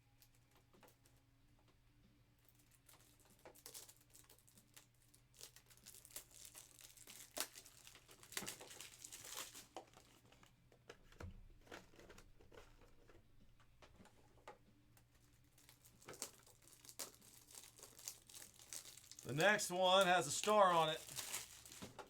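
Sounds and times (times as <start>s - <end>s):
small clicks and crackles: 0.1s - 1.8s, 2.4s - 19.3s, 20.0s - 22.0s
plastic wrapping crinkling: 2.5s - 10.5s, 15.1s - 22.0s.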